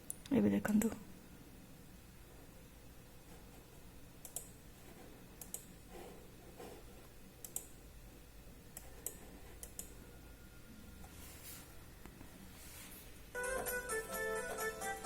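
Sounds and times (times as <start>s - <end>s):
faint room hiss: 0.0s - 15.0s
computer mouse clicking: 4.2s - 4.6s, 5.4s - 5.7s, 7.4s - 7.8s, 8.7s - 10.0s.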